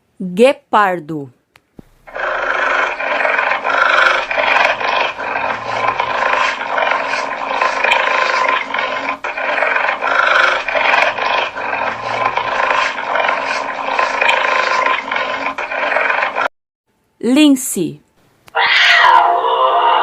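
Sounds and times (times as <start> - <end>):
cheetah rasping call: 2.1 - 16.2.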